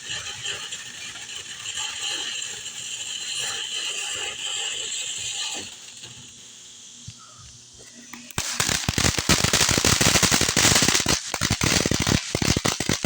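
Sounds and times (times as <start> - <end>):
firework fuse hissing and crackling: 0.0 - 13.0.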